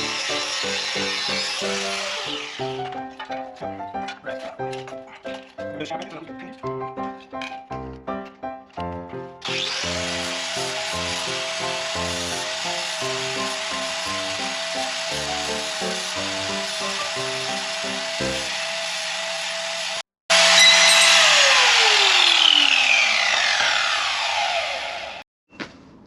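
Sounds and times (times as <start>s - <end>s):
angle grinder on steel: 0.0s - 3.2s, 9.4s - 25.2s
music: 0.0s - 18.7s.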